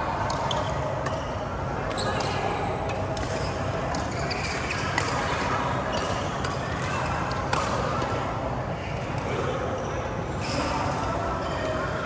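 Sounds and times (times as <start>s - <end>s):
court background noise: 0.0s - 12.0s
racket hitting shuttlecock: 0.3s - 8.3s
shoe squeaks: 1.9s - 2.6s, 4.0s - 7.4s, 10.3s - 10.9s.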